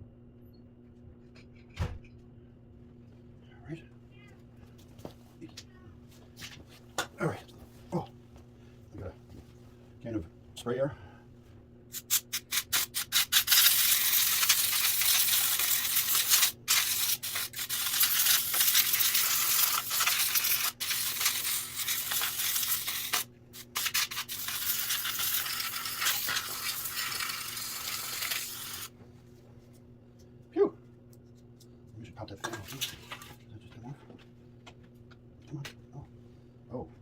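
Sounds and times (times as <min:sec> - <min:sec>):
compressed air spraying: 0:12.0 - 0:28.9.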